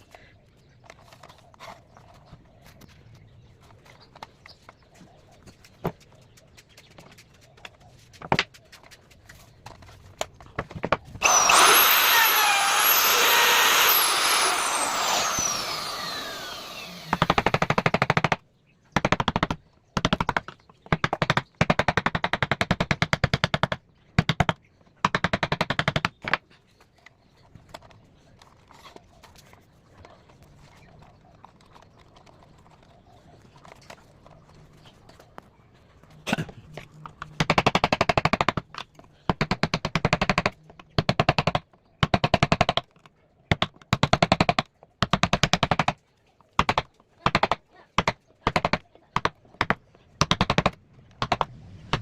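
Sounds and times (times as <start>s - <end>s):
wood router motor whining: 11.2s - 17.6s.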